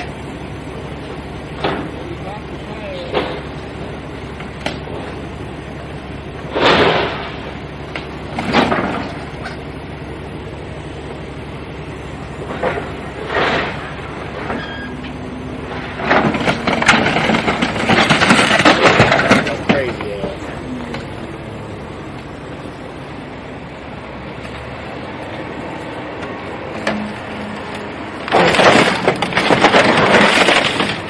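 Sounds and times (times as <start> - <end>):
loud busy noise: 0.0 - 31.0
vehicle low drone: 0.0 - 31.0.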